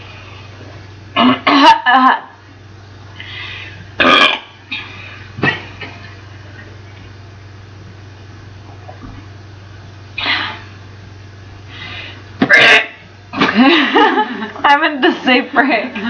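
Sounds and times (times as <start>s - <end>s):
loud human burps: 1.2s - 2.0s, 4.0s - 5.9s, 12.4s - 13.5s.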